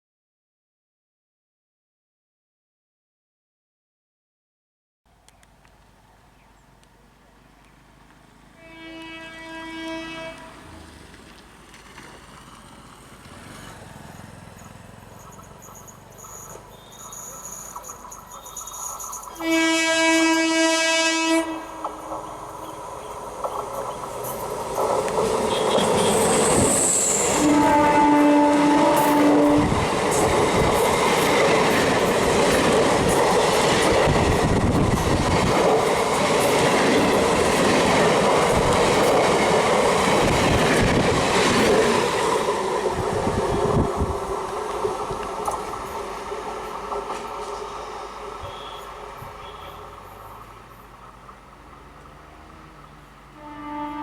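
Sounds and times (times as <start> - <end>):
train wheels on rails: 6.8 - 53.8
train horn blast: 8.6 - 10.9, 19.4 - 22.2, 25.4 - 30.0, 48.4 - 50.1, 53.3 - 54.0.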